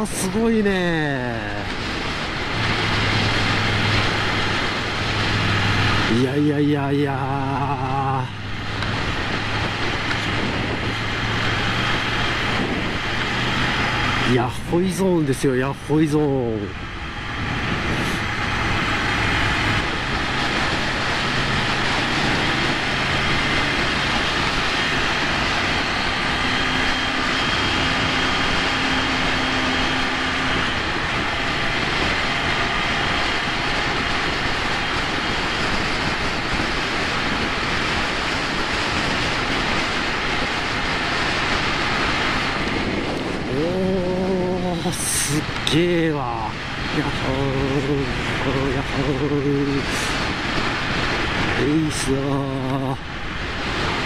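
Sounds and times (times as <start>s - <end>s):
wind rush over microphone: 0.0s - 54.0s
motorcycle engine running: 16.7s - 54.0s.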